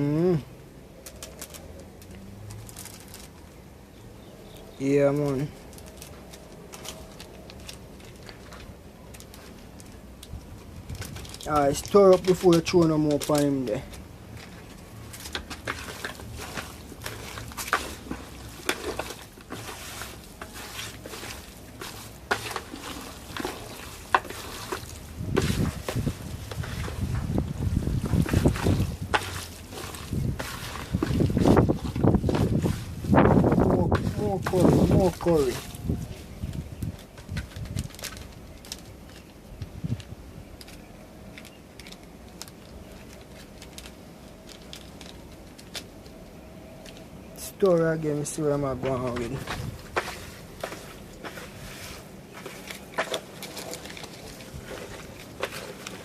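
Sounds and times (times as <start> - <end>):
spoon scraping and knocking a pot: 15.3 - 27.1.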